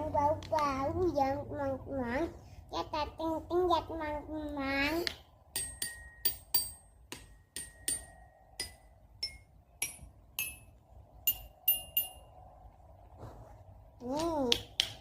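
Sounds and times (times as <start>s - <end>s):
toy chime tinging: 11.3s - 12.3s.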